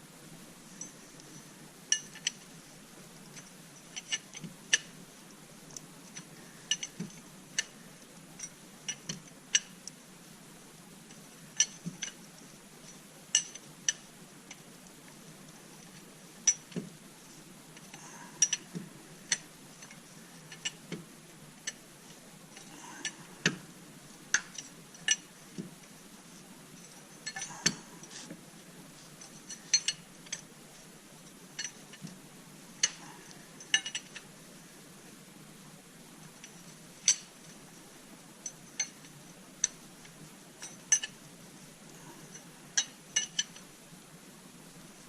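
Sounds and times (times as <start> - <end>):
metal tools clinking: 29.2 - 30.4.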